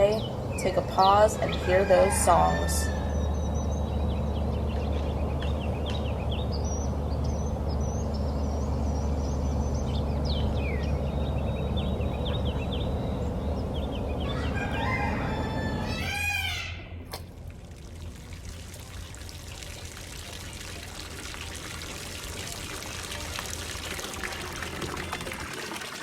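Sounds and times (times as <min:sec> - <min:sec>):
songbirds chirping: 0:00.0 - 0:17.1.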